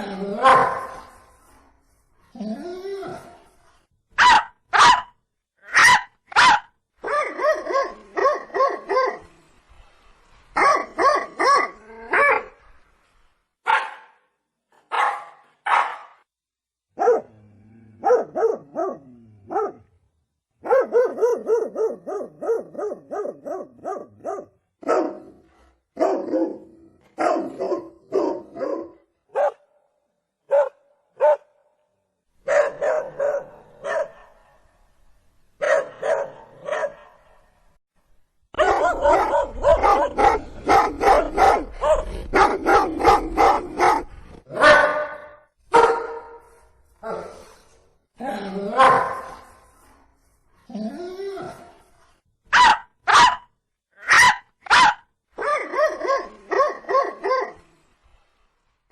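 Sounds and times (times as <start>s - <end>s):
dog barking: 0.4s - 1.1s, 4.2s - 9.2s, 10.6s - 12.5s, 13.6s - 14.2s, 14.9s - 16.2s, 17.0s - 17.3s, 18.0s - 19.9s, 20.6s - 25.3s, 26.0s - 29.7s, 30.5s - 31.6s, 32.4s - 34.5s, 35.6s - 37.3s, 38.6s - 46.4s, 48.8s - 49.4s, 52.5s - 57.6s.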